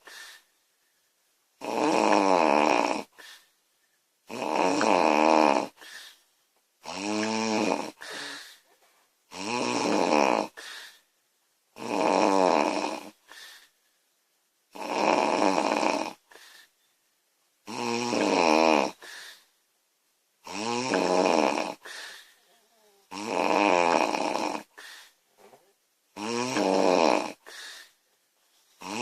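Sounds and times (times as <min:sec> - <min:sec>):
soft breath sound: 0:00.0 - 0:01.3, 0:03.0 - 0:04.0, 0:05.7 - 0:06.4, 0:07.9 - 0:09.2, 0:10.5 - 0:11.2, 0:13.1 - 0:14.1, 0:16.2 - 0:17.0, 0:18.9 - 0:19.6, 0:21.8 - 0:23.1, 0:24.6 - 0:25.8, 0:27.3 - 0:29.0
woman snoring loudly: 0:01.6 - 0:03.2, 0:04.3 - 0:05.8, 0:06.8 - 0:08.4, 0:09.3 - 0:10.6, 0:11.8 - 0:13.2, 0:14.7 - 0:16.2, 0:17.7 - 0:19.1, 0:20.4 - 0:24.8, 0:26.2 - 0:27.6, 0:28.8 - 0:29.0.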